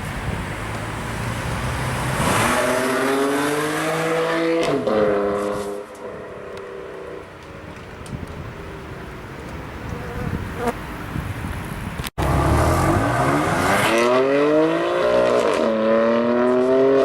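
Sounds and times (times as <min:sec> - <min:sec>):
car engine accelerating hard: 0:12.2 - 0:17.0.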